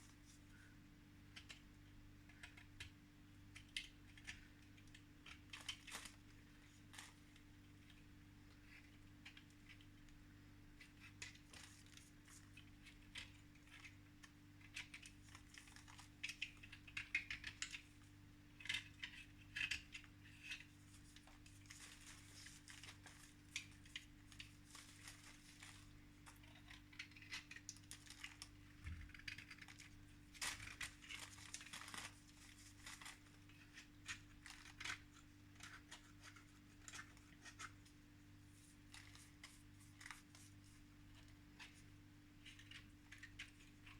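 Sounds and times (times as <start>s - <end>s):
low electrical hum: 0.0s - 43.9s
scratching and clicking: 18.6s - 37.9s.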